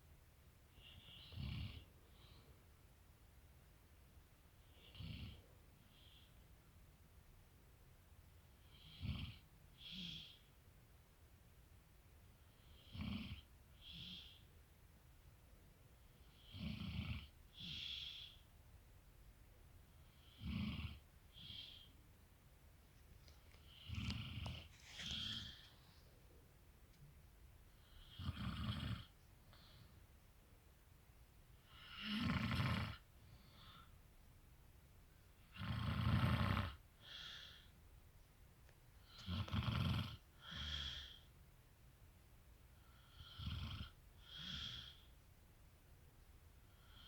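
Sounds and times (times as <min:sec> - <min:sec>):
faint breath out: 0:24.6 - 0:26.3
man snoring: 0:28.1 - 0:29.1, 0:31.8 - 0:33.0.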